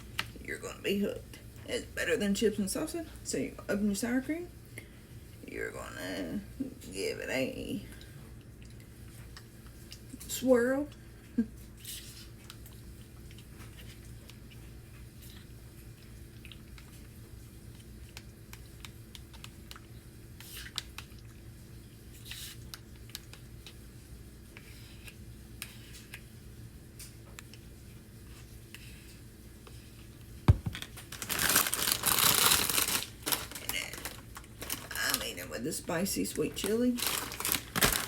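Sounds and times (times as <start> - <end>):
sharp thump: 30.5 - 30.8
food and packaging being handled: 30.5 - 35.5, 36.3 - 38.0.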